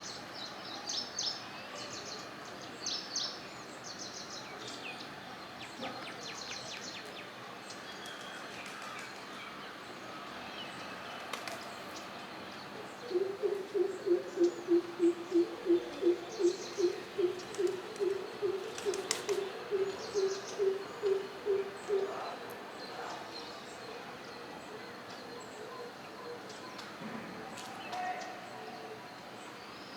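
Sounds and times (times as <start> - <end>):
small birds chirping: 10.6 - 23.8.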